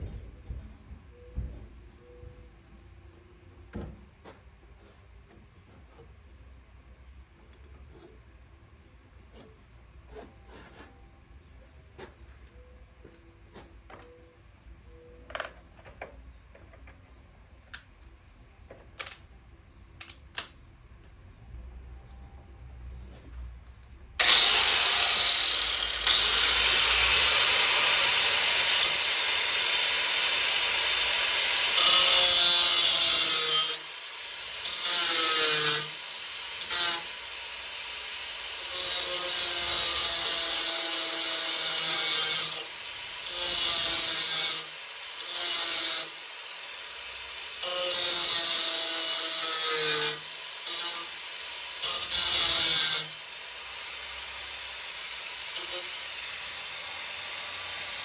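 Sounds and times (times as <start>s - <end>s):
power tool whining and rasping: 24.2s - 58.0s.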